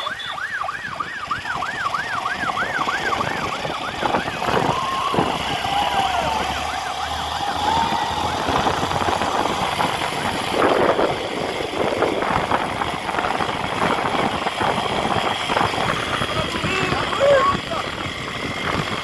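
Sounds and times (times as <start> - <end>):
siren yelping: 0.0 - 10.9, 13.8 - 17.9
traffic noise: 0.0 - 19.0.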